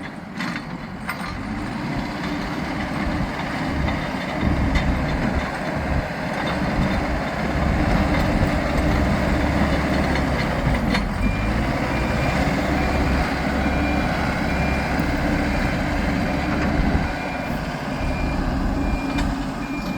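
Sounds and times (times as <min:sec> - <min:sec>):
diesel engine working hard: 0:00.0 - 0:19.9
reversing alarm beeping: 0:10.9 - 0:19.9.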